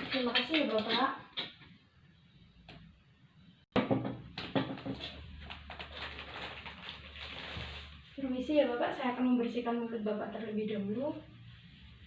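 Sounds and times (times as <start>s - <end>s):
rustling and clattering handling noise: 4.5s - 8.1s.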